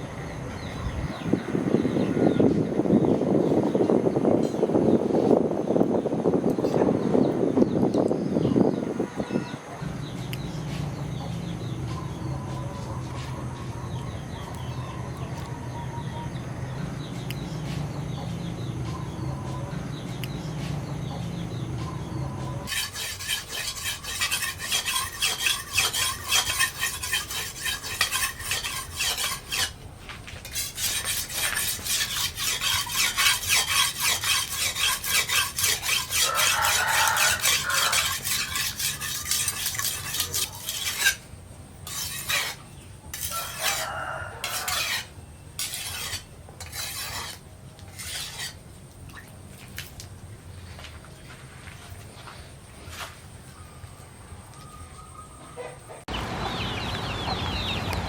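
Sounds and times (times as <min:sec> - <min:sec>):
knife scraping on sharpening steel: 0:22.6 - 0:29.8, 0:30.4 - 0:41.2, 0:41.8 - 0:48.6.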